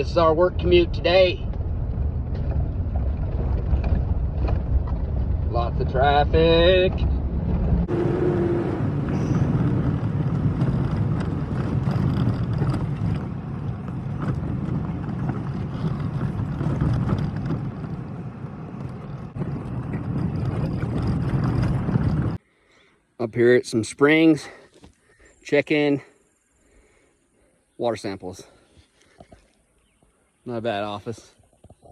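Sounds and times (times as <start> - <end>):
vehicle engine running: 0.0 - 22.4.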